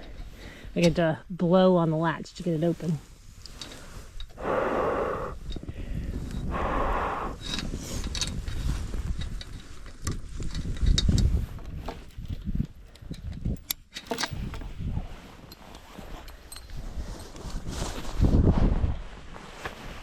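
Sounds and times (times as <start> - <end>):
person blowing hard: 4.4 - 5.4.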